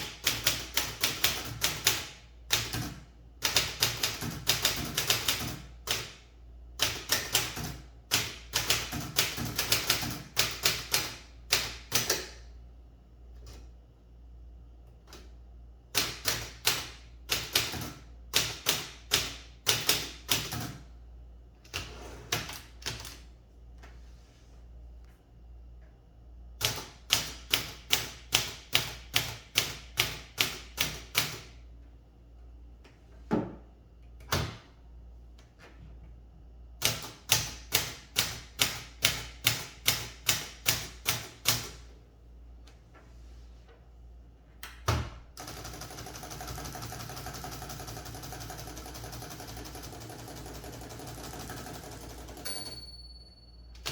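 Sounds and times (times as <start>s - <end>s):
typewriter keystrokes: 0.0s - 6.2s, 6.8s - 12.4s, 16.0s - 20.8s, 36.8s - 41.8s.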